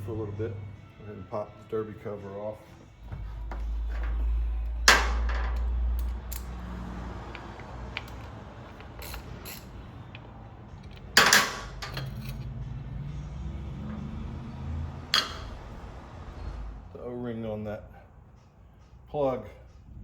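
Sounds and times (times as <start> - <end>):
metal tools clinking: 7.3 - 12.6
loud metal clanks: 11.0 - 12.4.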